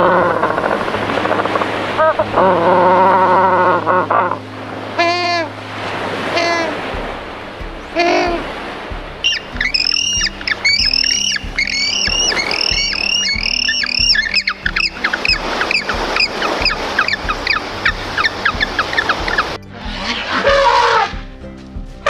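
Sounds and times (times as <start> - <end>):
background music with steady beat: 0.4 - 22.0
bird giving short sharp calls: 9.2 - 19.5.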